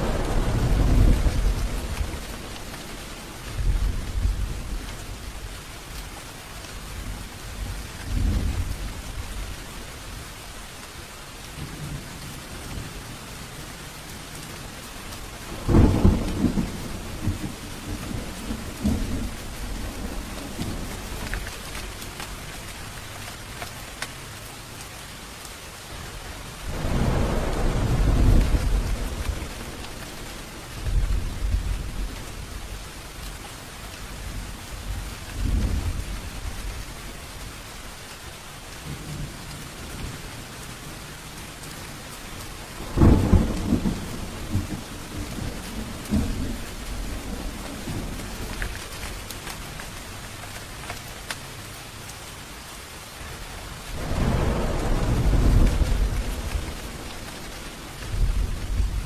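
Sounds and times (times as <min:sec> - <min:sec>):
thunder rolling: 0:00.0 - 0:05.6, 0:15.3 - 0:23.0, 0:26.0 - 0:32.8, 0:42.4 - 0:49.6, 0:53.9 - 0:59.0
heavy rain falling: 0:00.0 - 0:59.0.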